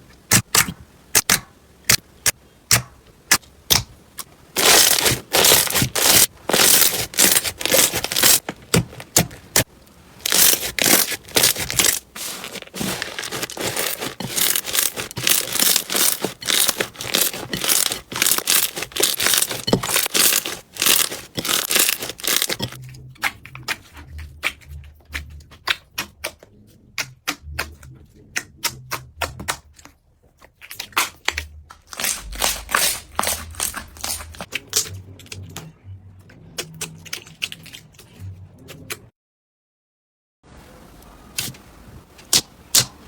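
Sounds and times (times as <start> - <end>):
slime crackling and popping: 0.3 - 22.8, 30.6 - 34.9.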